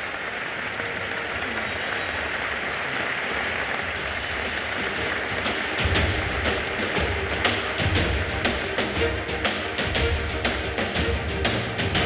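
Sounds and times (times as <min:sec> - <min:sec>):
audience applauding: 0:00.0 - 0:12.0
music with strong drum beat: 0:03.9 - 0:12.0.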